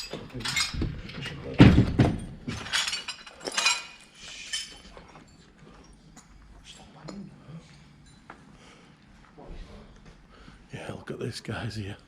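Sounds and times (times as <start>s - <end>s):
debris and glass clattering: 0.0s - 6.4s.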